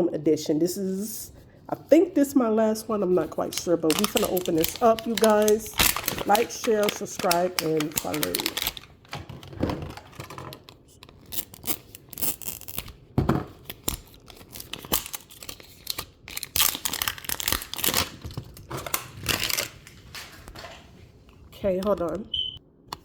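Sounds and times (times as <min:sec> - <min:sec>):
plastic wrapping tearing and crinkling: 0:03.4 - 0:13.0, 0:13.6 - 0:20.8.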